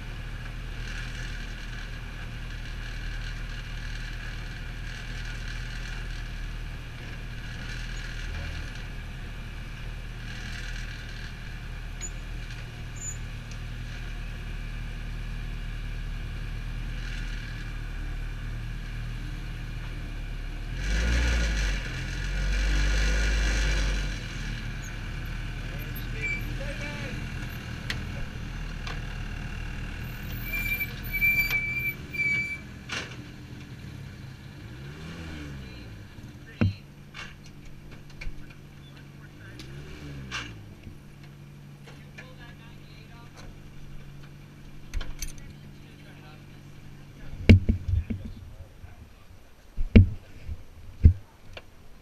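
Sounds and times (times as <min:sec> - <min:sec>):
road noise: 0:00.0 - 0:52.0
car engine running: 0:19.4 - 0:51.4.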